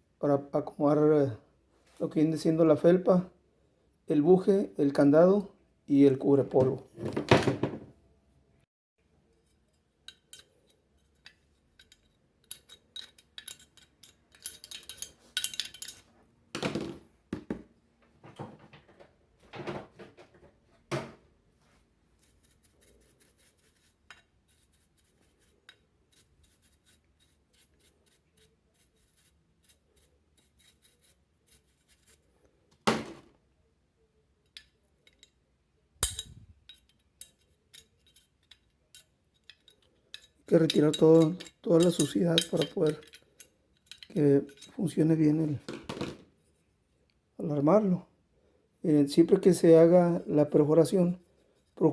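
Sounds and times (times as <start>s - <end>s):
metallic clinks: 36.0s - 44.8s
tool scraping metal housing: 36.0s - 44.8s.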